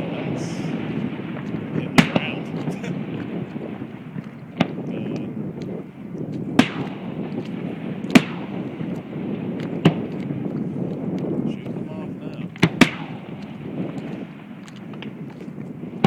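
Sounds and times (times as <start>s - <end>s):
fireworks bangs: 0.0s - 16.0s
faint firework pops: 1.2s - 15.5s.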